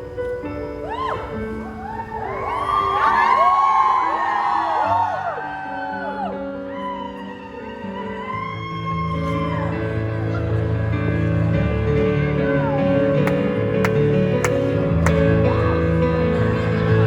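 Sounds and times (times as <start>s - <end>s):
audience whoops and screams: 0.8s - 10.7s.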